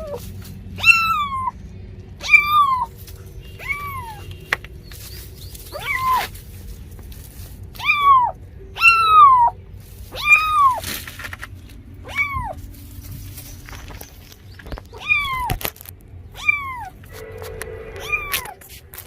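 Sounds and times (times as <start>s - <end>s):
cat meowing: 0.8s - 1.6s, 2.2s - 4.4s, 5.7s - 6.3s, 7.8s - 10.8s, 12.0s - 12.6s, 14.9s - 15.6s, 16.3s - 17.1s, 18.0s - 18.6s.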